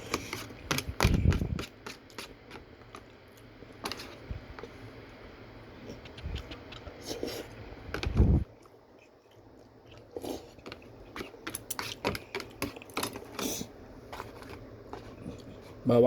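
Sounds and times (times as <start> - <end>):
person chewing: 8.5 - 15.8.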